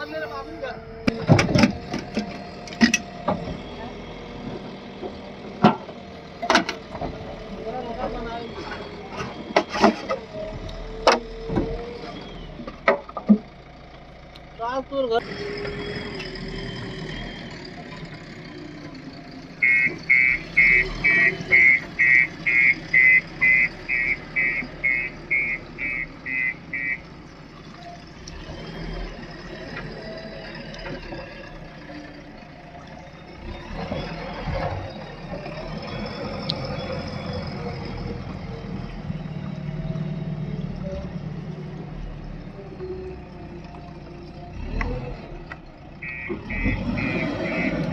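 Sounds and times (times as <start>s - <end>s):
diesel engine running: 0.0s - 47.9s
metal clank: 1.1s - 3.8s
reversing alarm beeps: 19.6s - 27.0s, 46.0s - 47.9s.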